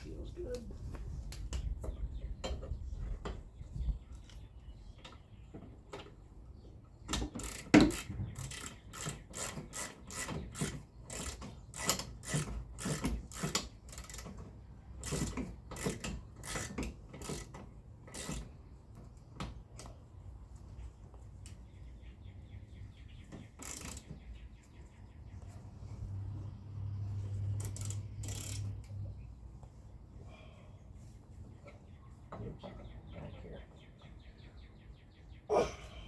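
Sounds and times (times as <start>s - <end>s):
socket ratchet clicking: 27.6s - 29.0s.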